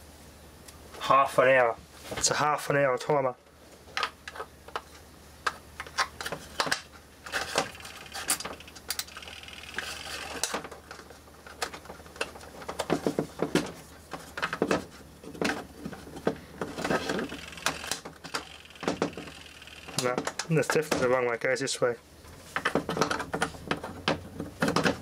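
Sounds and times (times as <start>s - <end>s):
timer parts clicking and rattling: 7.3s - 10.6s, 17.0s - 20.9s.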